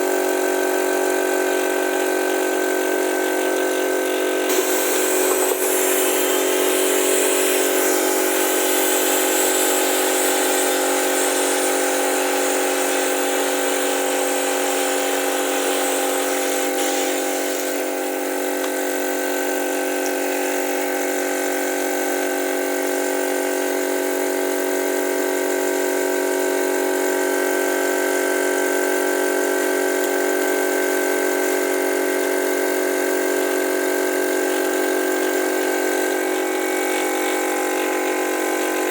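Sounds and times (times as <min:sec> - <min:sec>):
air compressor humming: 0:00.0 - 0:38.9
air vacuum gun hissing: 0:01.4 - 0:20.9, 0:33.5 - 0:38.9.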